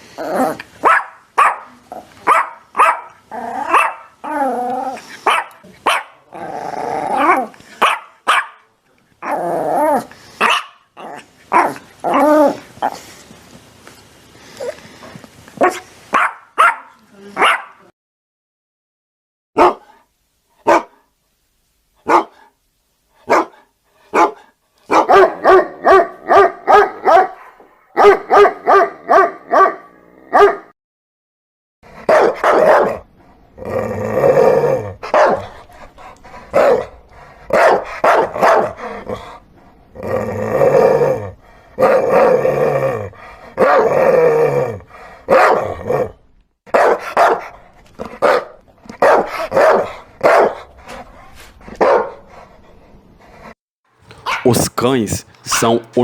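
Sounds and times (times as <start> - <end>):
dogs barking: 0.8 - 4.2, 5.2 - 6.2, 7.2 - 8.6, 10.4 - 10.8, 15.6 - 17.8, 19.6 - 19.8, 20.7 - 21.0, 22.1 - 22.3, 23.3 - 30.7, 32.1 - 33.0, 35.0 - 35.4, 37.5 - 38.8, 46.7 - 47.5, 48.2 - 50.6, 51.8 - 52.2, 54.1 - 54.6.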